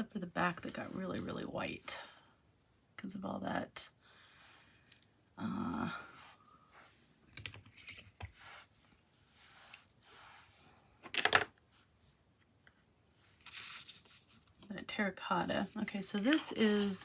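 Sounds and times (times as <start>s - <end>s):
craft supplies clicking and rustling: 11.1s - 11.5s.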